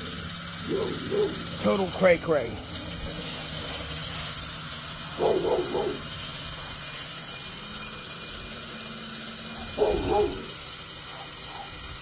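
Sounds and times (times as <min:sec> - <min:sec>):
fan whirring and fluttering: 0:00.0 - 0:12.0
dog bark: 0:00.7 - 0:01.4, 0:05.2 - 0:06.0, 0:09.6 - 0:10.5, 0:11.1 - 0:11.8.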